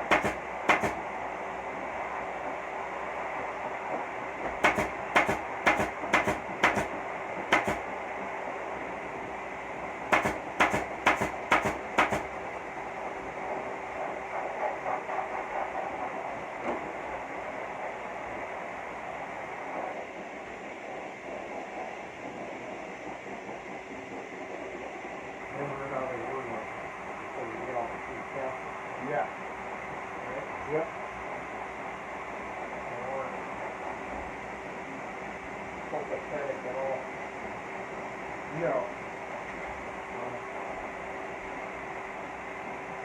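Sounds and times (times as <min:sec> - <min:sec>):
sharp taps: 0:00.0 - 0:01.0, 0:04.6 - 0:06.9, 0:07.5 - 0:07.8, 0:10.1 - 0:12.3.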